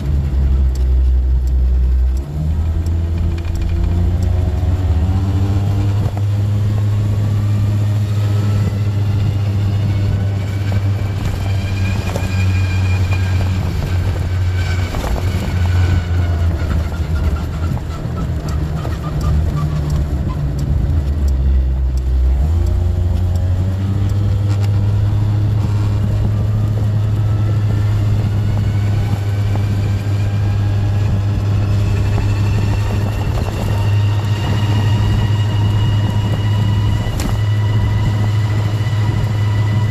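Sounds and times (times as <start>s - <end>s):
loud low drone: 20.7s - 39.9s.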